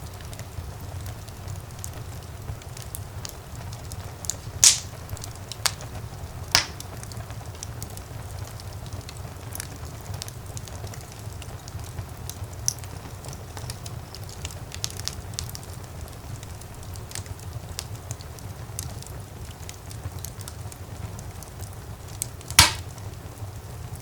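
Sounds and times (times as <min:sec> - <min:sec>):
wood fire crackling: 0:00.0 - 0:24.0
loud wood pops: 0:04.4 - 0:05.8, 0:06.5 - 0:06.9, 0:22.5 - 0:23.0.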